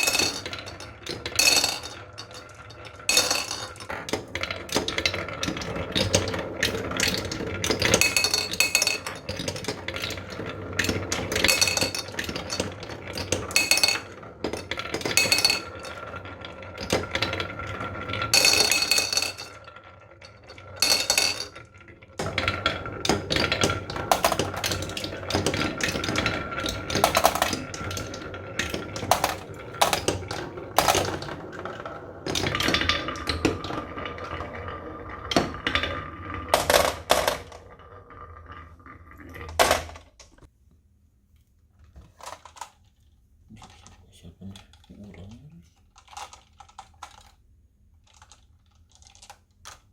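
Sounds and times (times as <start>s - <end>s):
marbles rolling and clacking: 0.0s - 40.5s, 42.1s - 43.0s, 44.6s - 47.4s, 48.0s - 49.9s.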